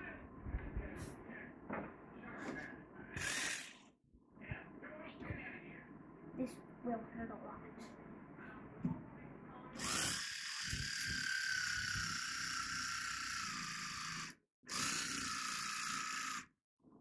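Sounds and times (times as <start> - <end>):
electric carving knife whining: 3.2 - 3.8, 9.8 - 16.5.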